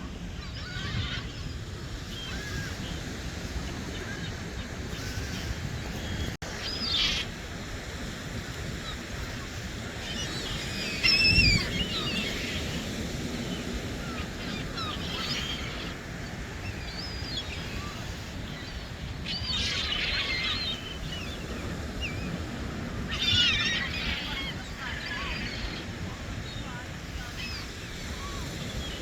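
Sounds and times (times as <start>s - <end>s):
birds chirping: 8.7s - 29.0s.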